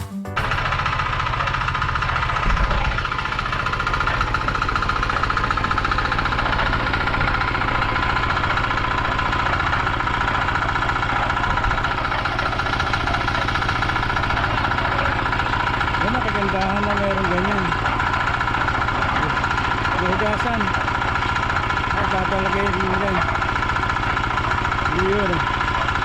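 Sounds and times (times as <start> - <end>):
steady whine: 0.4 - 25.8
concrete mixer engine running: 0.4 - 26.0.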